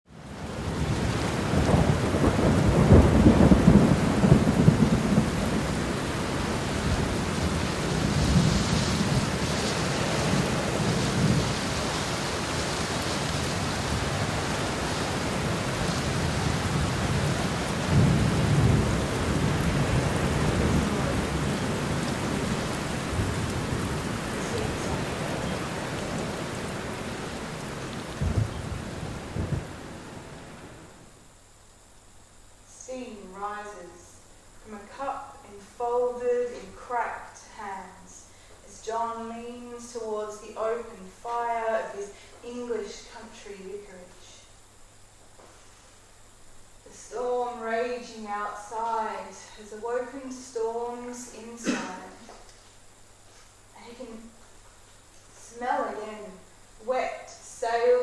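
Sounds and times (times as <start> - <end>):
steady rain: 0.1 - 58.0
low rolls of thunder: 0.3 - 31.1.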